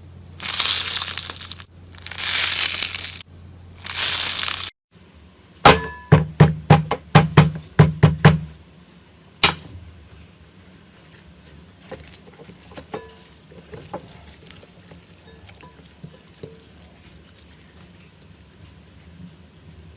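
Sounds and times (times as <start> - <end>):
crunching noise: 0.4 - 3.2, 3.8 - 4.7.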